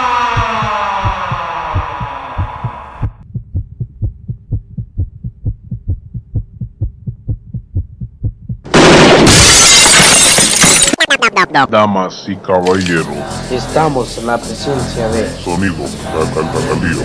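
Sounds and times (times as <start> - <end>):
falling siren-like tone: 0.0 - 3.0
heartbeat thumps: 0.0 - 8.7
loud crash: 8.7 - 10.9.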